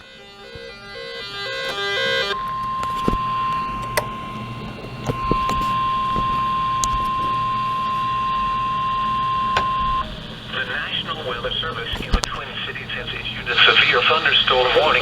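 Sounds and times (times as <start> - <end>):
low hum: 0.0 - 15.0
high alarm beep: 1.6 - 11.8
sharp clicks: 11.9 - 12.5.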